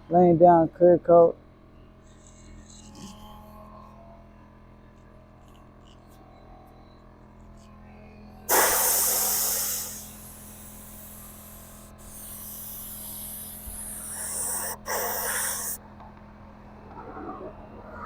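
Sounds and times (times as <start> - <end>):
spray gun hissing: 8.5 - 15.8.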